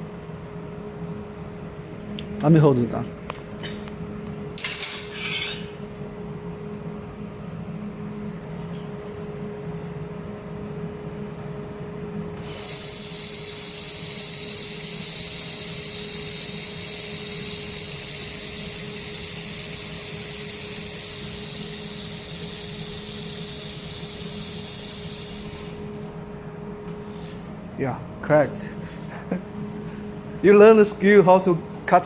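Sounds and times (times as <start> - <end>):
cooling unit hum: 0.0 - 32.0
laser welder hissing: 12.4 - 26.2, 26.8 - 27.7.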